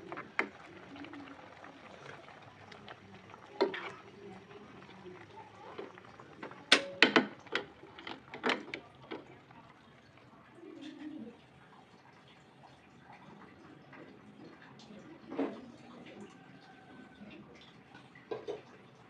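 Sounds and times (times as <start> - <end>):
hard objects knocking and clicking: 6.7 - 9.2.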